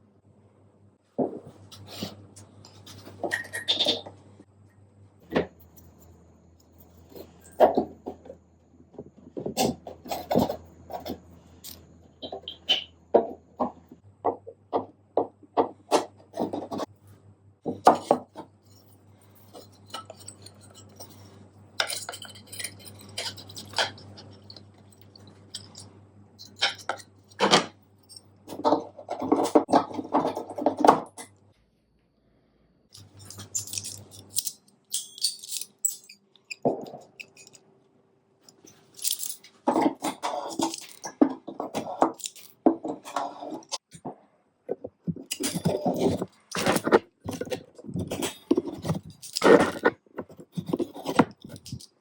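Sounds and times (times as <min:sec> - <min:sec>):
faint steady hum: 0:00.0 - 0:52.0
metal tools clinking on workbench: 0:02.7 - 0:04.2, 0:17.8 - 0:31.0, 0:33.0 - 0:37.6, 0:38.5 - 0:43.8, 0:45.1 - 0:52.0.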